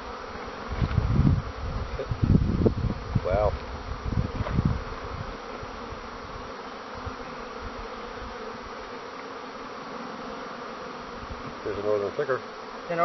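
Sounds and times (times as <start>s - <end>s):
honeybees buzzing: 0.0s - 13.0s.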